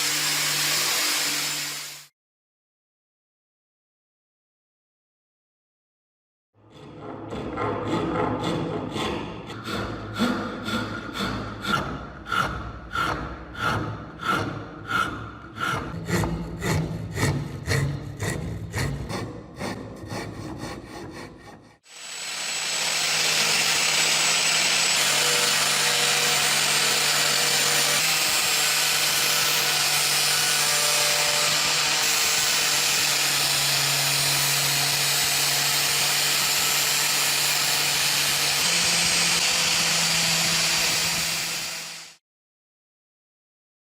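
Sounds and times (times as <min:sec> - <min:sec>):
power tool whirring: 0:00.0 - 0:02.1, 0:21.8 - 0:42.2
hand rasping wood: 0:08.4 - 0:21.8.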